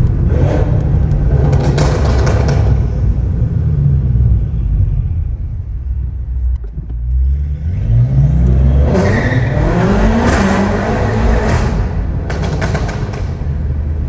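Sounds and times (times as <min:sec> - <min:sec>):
car engine accelerating hard: 0:00.0 - 0:04.6, 0:07.3 - 0:14.0
sharp exhaust cracks: 0:08.4 - 0:14.0.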